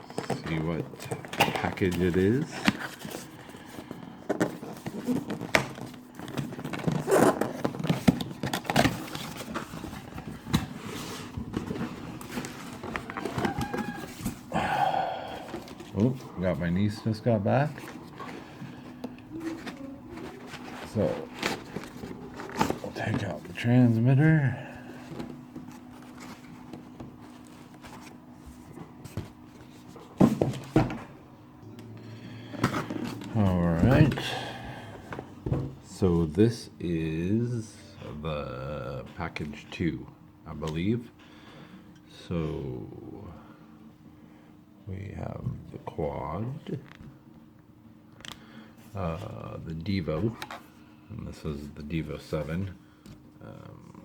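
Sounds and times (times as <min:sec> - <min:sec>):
packaging being handled: 0:00.0 - 0:24.0
faint steady hum: 0:00.0 - 0:54.0.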